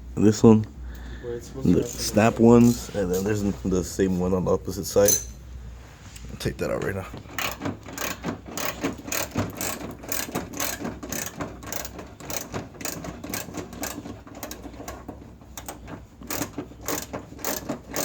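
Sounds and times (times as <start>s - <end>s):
ratchet wrench clicking: 7.3s - 15.0s, 15.6s - 18.0s.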